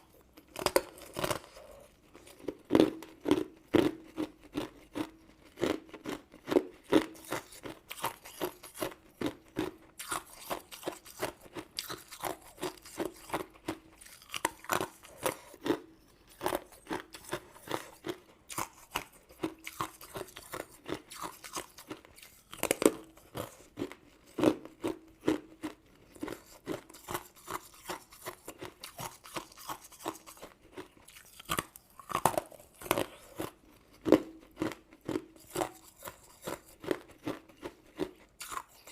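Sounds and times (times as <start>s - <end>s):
crunching and chewing candy: 0.0s - 38.9s.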